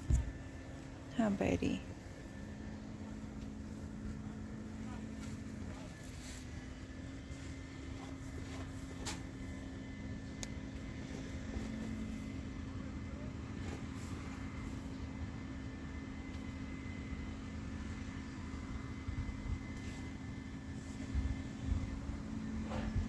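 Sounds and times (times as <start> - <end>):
machine hum with high whine: 0.0 - 23.0.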